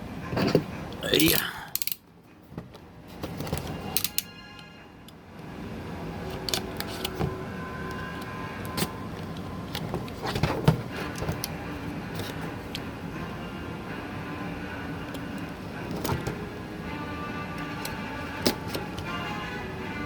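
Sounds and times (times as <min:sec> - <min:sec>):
cardboard and plastic rustling: 0:02.5 - 0:03.9, 0:08.1 - 0:12.7.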